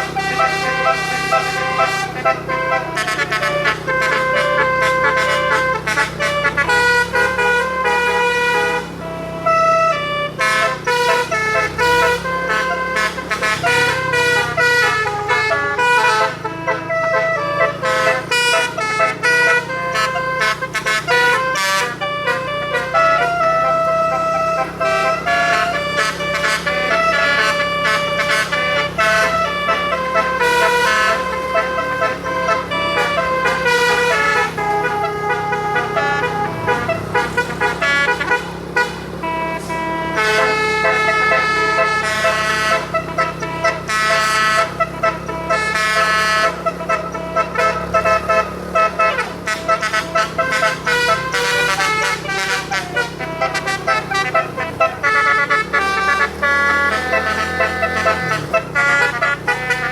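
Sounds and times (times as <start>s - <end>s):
bus air horn melody: 0.0s - 59.9s
low engine hum: 0.0s - 59.9s.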